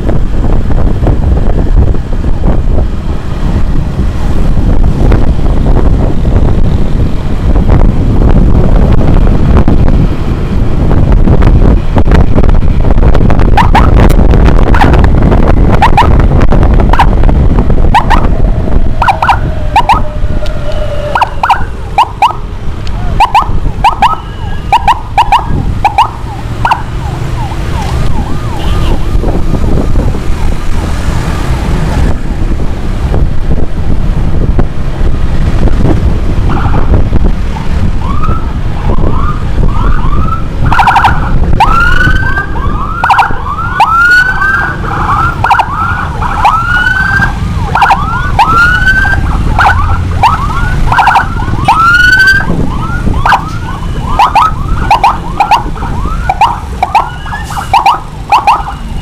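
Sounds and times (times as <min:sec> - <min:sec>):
motorcycle road and wind rumble: 0:00.0 - 0:59.0
short siren chirps: 0:17.9 - 0:22.4, 0:23.2 - 0:29.1, 0:39.1 - 0:59.0.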